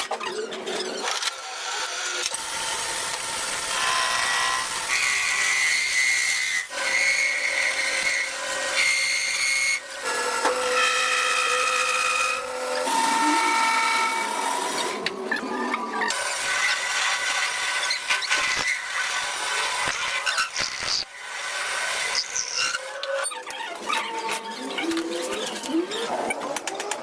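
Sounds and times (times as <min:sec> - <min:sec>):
power tool squealing on metal: 0:17.8 - 0:18.9, 0:19.8 - 0:21.1, 0:22.0 - 0:26.1.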